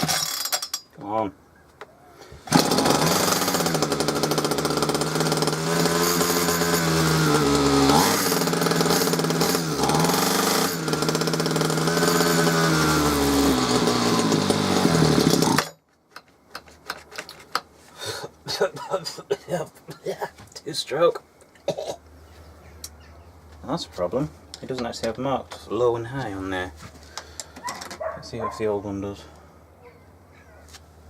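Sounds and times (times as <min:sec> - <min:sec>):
hedge trimmer engine running: 0:00.0 - 0:00.6, 0:02.4 - 0:15.8.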